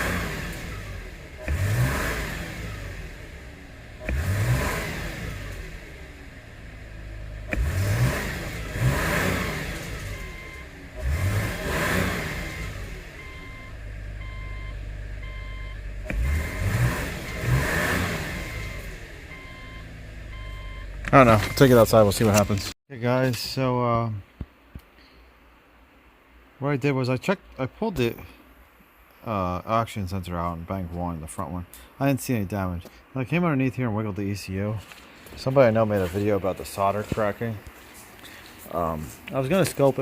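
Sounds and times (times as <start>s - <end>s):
car engine revving: 0.0s - 22.7s
short beeps: 13.2s - 15.8s, 18.5s - 21.8s.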